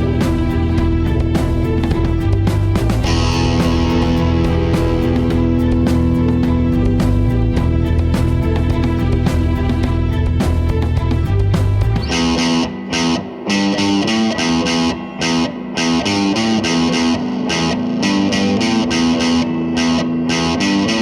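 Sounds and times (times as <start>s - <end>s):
low bass: 0.0s - 12.4s
distorted electric guitar: 0.0s - 21.0s.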